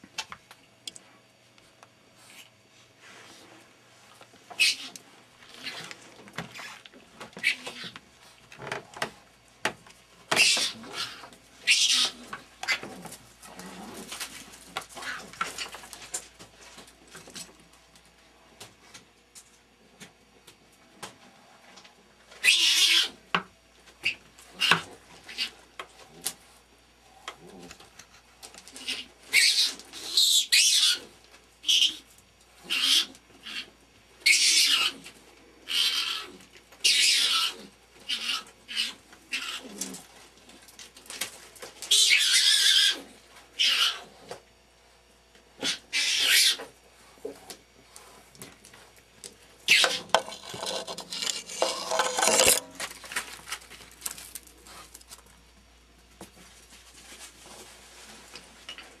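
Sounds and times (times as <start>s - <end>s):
skunks hissing cries: 32.7s - 35.0s, 35.7s - 39.6s, 45.6s - 46.6s.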